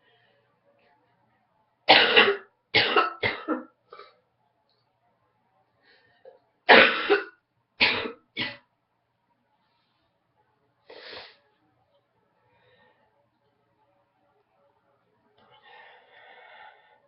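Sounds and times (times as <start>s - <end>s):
woman coughing: 1.9s - 3.7s, 6.7s - 8.6s.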